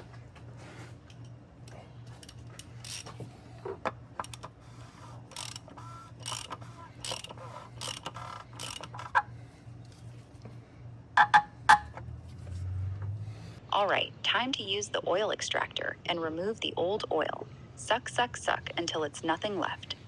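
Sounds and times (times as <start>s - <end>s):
rasping ratchet-like strokes: 2.2s - 3.2s, 4.2s - 9.2s.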